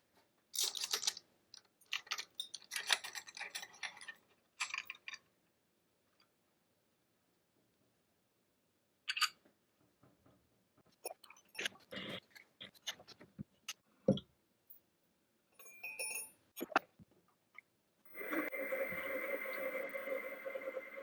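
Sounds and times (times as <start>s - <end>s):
metal parts and tools clinking: 0.6s - 5.2s, 15.6s - 16.8s
metal part ringing: 15.6s - 16.3s.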